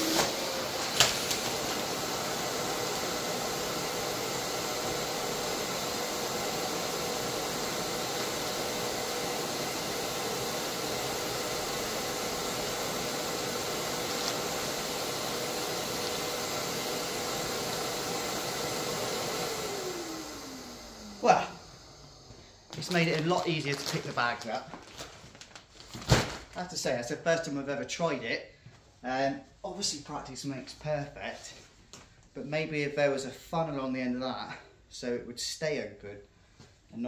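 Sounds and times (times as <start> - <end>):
vacuum cleaner running: 0.0 - 25.1.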